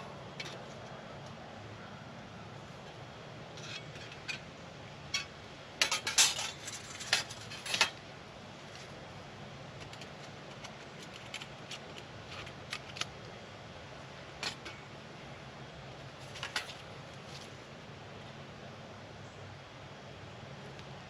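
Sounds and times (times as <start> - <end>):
camp gear clicks and taps: 9.7 - 13.3.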